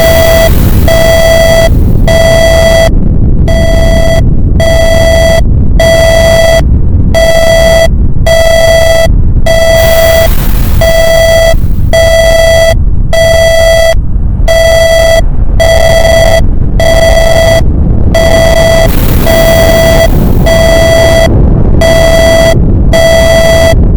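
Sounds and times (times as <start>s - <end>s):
burst of hiss: 0.0s - 2.1s, 9.8s - 11.9s, 18.9s - 20.6s
harsh buzzing alarm beep: 0.0s - 23.9s
low volcano rumble: 0.0s - 23.9s.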